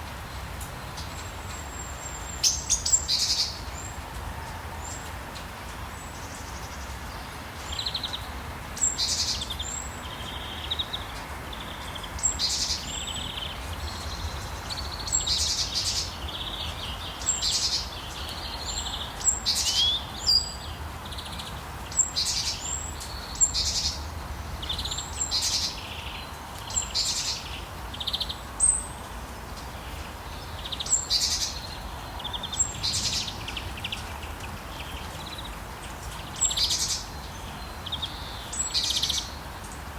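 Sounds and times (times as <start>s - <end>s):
rain falling: 0.0s - 30.5s.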